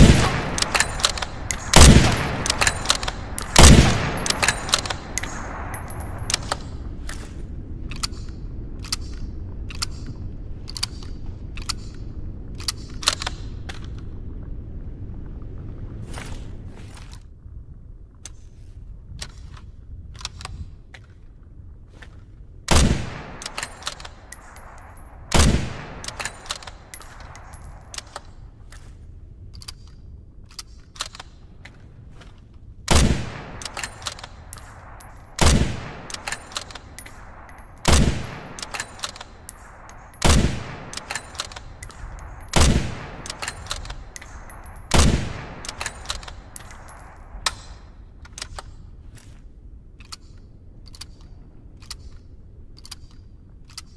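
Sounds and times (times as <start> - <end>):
rifle shots: 0.0 - 6.8, 22.7 - 28.2, 32.9 - 47.8
light clicks: 33.4 - 53.9.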